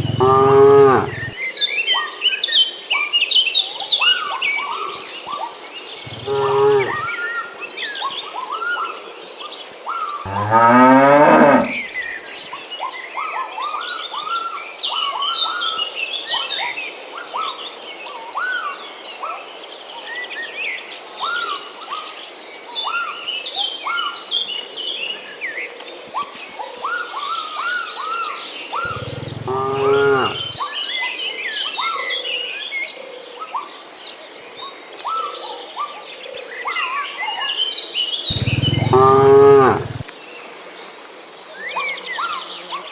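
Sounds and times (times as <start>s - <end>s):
birds chirping: 0.0s - 1.4s, 6.1s - 7.2s, 10.3s - 12.1s, 28.8s - 30.6s, 38.3s - 40.1s
cattle mooing: 0.0s - 1.4s, 6.1s - 7.1s, 10.3s - 11.8s, 28.9s - 30.6s, 38.3s - 40.0s.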